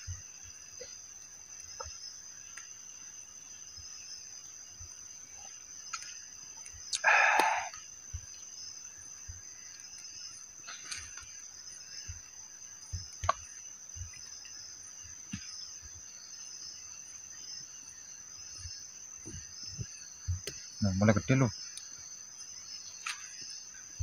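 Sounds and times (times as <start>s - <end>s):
crickets chirring: 0.0s - 24.0s.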